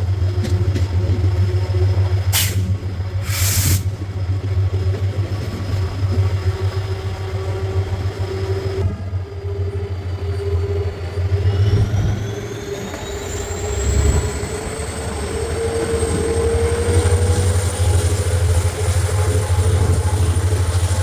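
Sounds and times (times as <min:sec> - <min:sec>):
diesel locomotive engine hum: 0:00.0 - 0:21.0.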